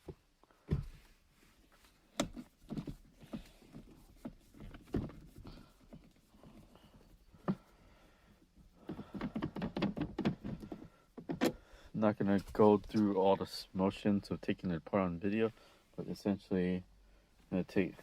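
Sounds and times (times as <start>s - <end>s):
plastic parts knocking and clicking: 8.8s - 11.6s.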